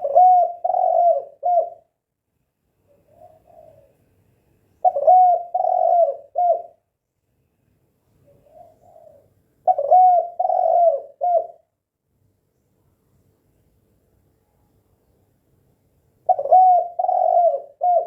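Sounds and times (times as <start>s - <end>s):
dove cooing: 0.0s - 1.9s, 2.9s - 4.0s, 4.8s - 6.8s, 8.2s - 11.7s, 16.2s - 18.0s.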